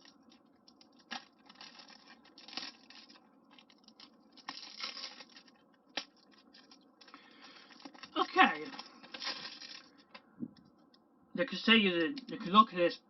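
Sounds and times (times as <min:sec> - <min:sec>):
plastic wrapping crinkling and tearing: 0:00.0 - 0:10.2.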